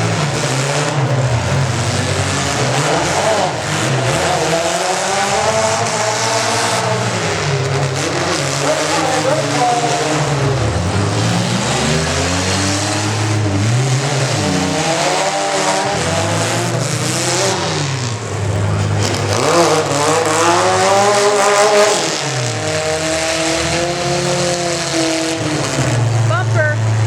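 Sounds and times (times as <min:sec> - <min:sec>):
pickup truck engine revving: 0:00.0 - 0:27.0.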